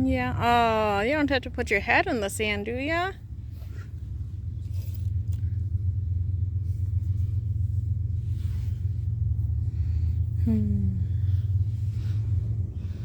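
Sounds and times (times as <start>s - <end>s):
wind buffeting microphone: 11.2s - 13.0s.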